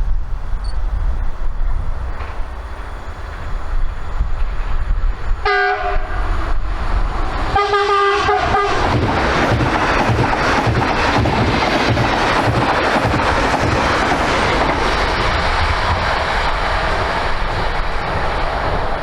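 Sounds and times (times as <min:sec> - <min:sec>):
train passing: 0:00.0 - 0:19.0
train horn blasts: 0:05.4 - 0:06.4, 0:07.6 - 0:08.9.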